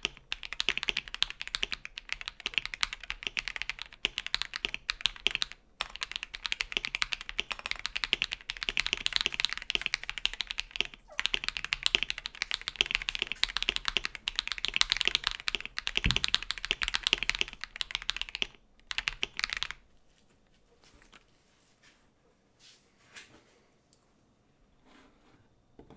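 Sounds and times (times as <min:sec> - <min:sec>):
mechanical keyboard typing: 0:00.0 - 0:19.8.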